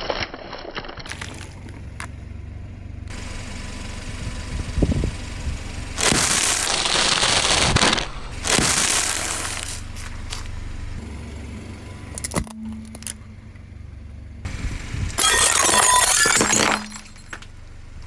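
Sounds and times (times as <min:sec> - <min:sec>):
cracks and clicks: 0:00.0 - 0:02.2
tyre crunching objects: 0:00.0 - 0:02.2, 0:06.0 - 0:10.6
car engine running low: 0:01.1 - 0:06.7, 0:08.1 - 0:18.0.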